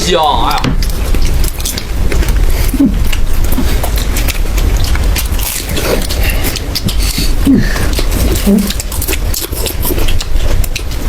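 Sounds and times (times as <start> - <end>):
person chewing crunchy food: 0.8 - 11.0.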